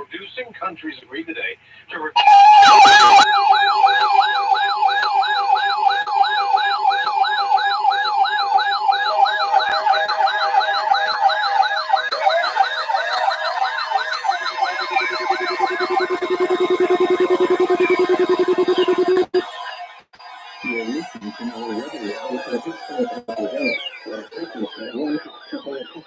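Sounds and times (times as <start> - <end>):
warbling siren-like tone: 2.2 - 19.5, 20.5 - 26.0
steady alert tones: 2.7 - 19.4.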